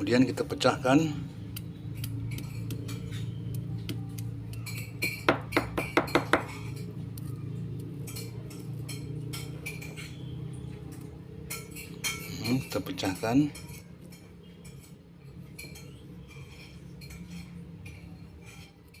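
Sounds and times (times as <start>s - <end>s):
utensil tapping against a dish: 1.5s - 10.2s.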